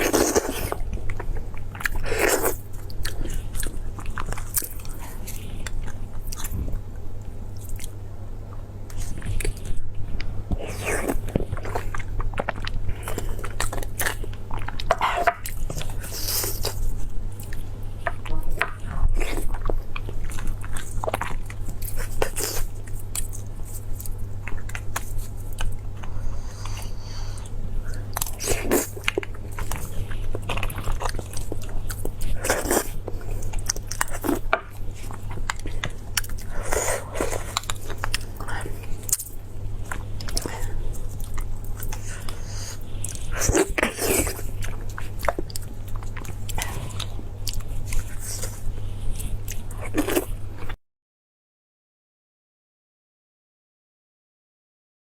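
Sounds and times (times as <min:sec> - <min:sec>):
steady low hum: 0:00.0 - 0:50.8
chewing and biting meat: 0:27.9 - 0:50.8.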